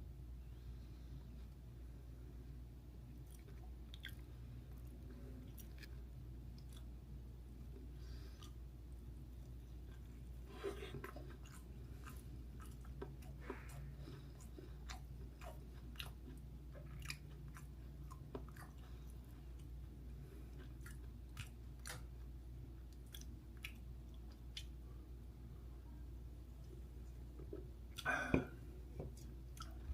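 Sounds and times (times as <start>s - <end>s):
low steady hum: 0.0s - 29.9s
person chewing: 3.2s - 7.0s, 9.3s - 22.3s, 22.9s - 24.9s, 29.1s - 29.9s.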